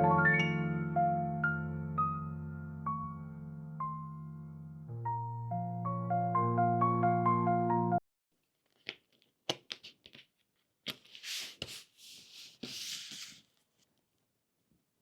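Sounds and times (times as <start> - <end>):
soft rubbing and sliding: 10.9 - 13.9.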